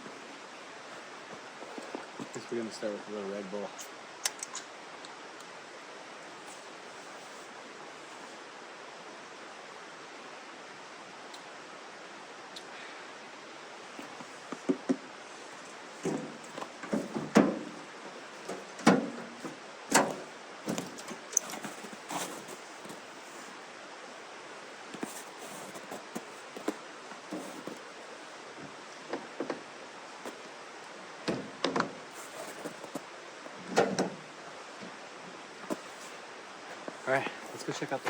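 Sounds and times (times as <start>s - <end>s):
knocks and clunks: 16.0s - 17.8s, 18.4s - 21.7s, 31.2s - 32.0s, 33.7s - 34.2s.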